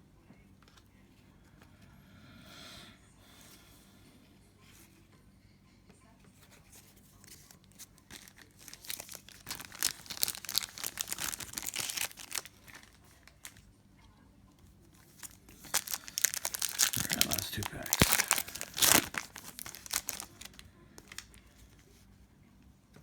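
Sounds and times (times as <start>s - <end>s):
card pack wrapper tearing and crinkling: 7.2s - 13.6s, 15.1s - 21.4s.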